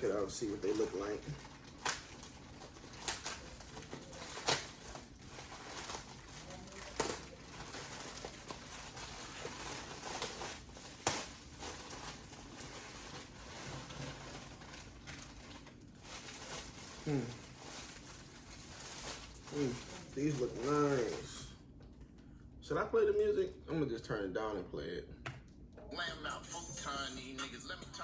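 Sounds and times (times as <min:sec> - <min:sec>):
package rustling: 0:00.0 - 0:21.5
sharp rips of packaging: 0:00.5 - 0:13.5, 0:14.5 - 0:21.3.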